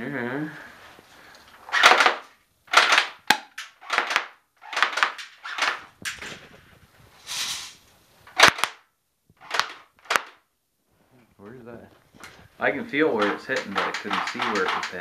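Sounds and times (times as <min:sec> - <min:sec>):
airsoft rifle shots popping: 0:01.7 - 0:06.6, 0:08.3 - 0:10.5, 0:13.0 - 0:15.0.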